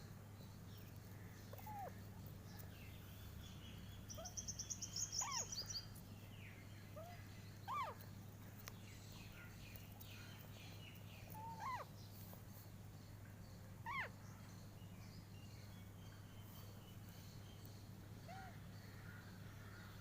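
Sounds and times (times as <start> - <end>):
steady low hum: 0.0 - 20.0
parrot squawking: 7.7 - 8.0, 11.4 - 11.9, 13.8 - 14.1.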